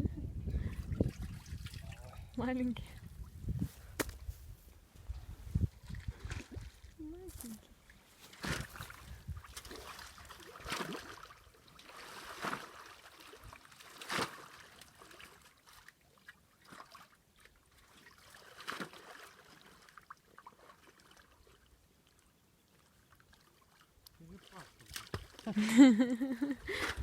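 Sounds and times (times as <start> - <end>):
shallow water splashing: 0.7 - 2.3, 7.6 - 22.2.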